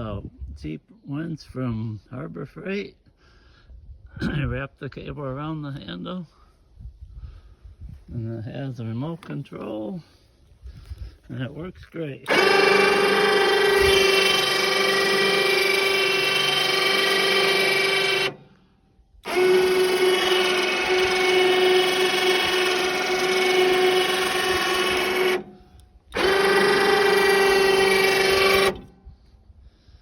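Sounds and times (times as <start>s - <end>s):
electric winch motor whining: 12.2s - 18.6s, 19.2s - 29.0s.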